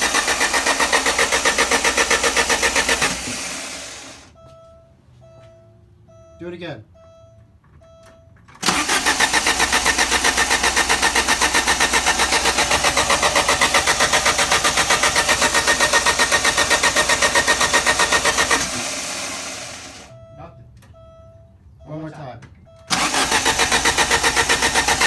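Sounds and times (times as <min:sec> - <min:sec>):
engine cranking on starter motor: 0:00.0 - 0:04.4, 0:08.5 - 0:20.2, 0:22.8 - 0:25.0.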